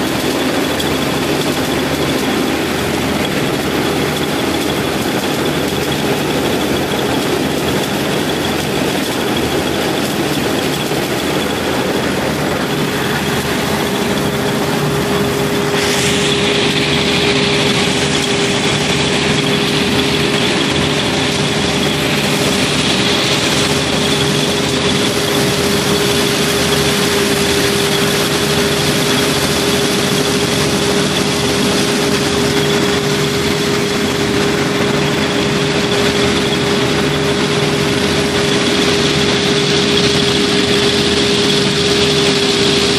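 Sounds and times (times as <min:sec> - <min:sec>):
combine harvester engine drone: 0:00.0 - 0:42.9
steady machine whine: 0:00.0 - 0:42.9
high rushing noise: 0:09.6 - 0:42.9.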